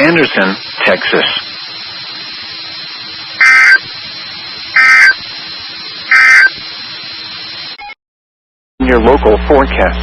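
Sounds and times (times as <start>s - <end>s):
radio hiss: 0.0s - 7.8s
warbling two-tone data bursts: 3.3s - 3.9s, 4.7s - 5.3s, 6.0s - 6.6s.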